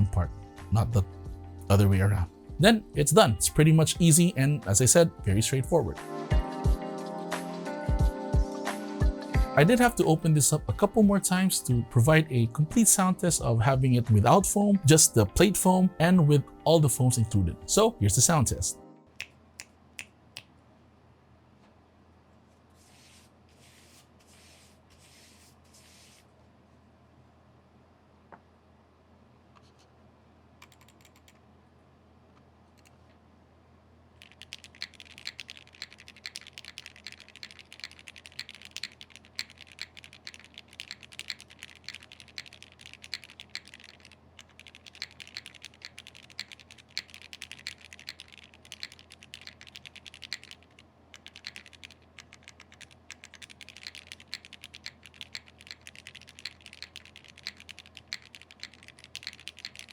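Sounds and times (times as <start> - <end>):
mechanical keyboard typing: 30.6 - 31.4, 34.2 - 59.9.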